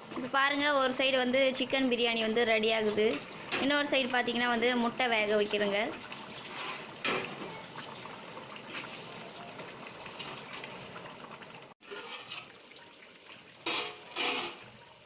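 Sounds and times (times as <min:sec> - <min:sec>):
chicken sizzling in a pot: 0:05.8 - 0:15.0.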